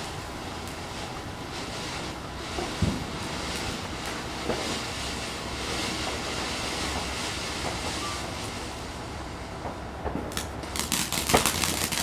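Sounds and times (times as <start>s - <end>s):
firework crackles: 0.0s - 12.0s
fountain firework hissing: 0.0s - 12.0s.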